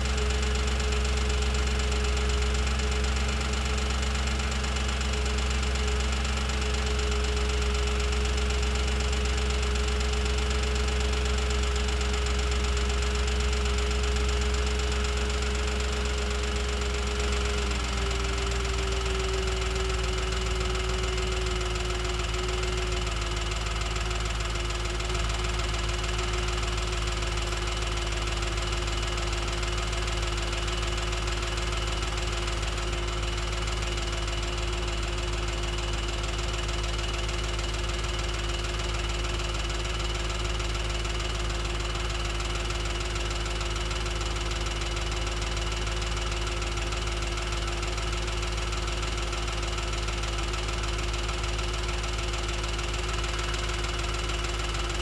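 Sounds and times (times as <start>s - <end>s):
car engine idling: 0.0s - 55.0s
engine ticking noise: 0.0s - 55.0s.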